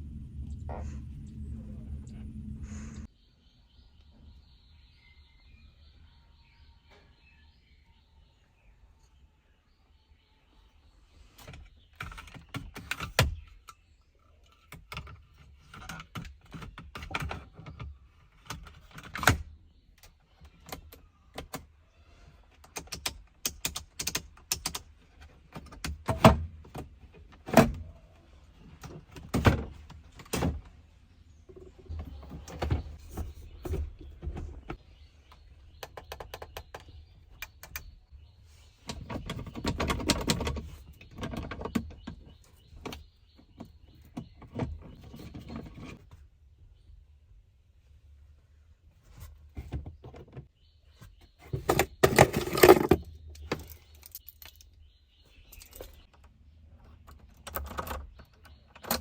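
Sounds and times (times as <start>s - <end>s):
sharp knocks and clicks: 34.3s - 37.9s.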